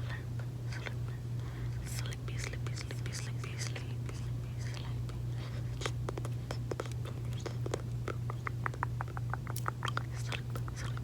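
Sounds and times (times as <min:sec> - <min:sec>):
gum chewing mouth clicks: 0:02.3 - 0:11.0.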